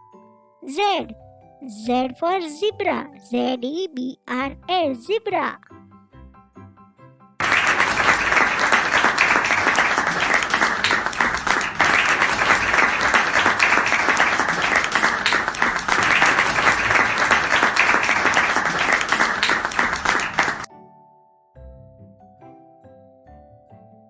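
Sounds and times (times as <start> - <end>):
crowd applauding: 7.4 - 20.7.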